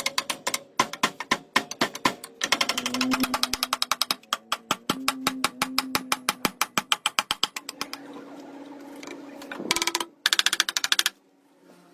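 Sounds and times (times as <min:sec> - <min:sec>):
sharp clicking knocks: 0:00.0 - 0:08.0, 0:09.7 - 0:11.2.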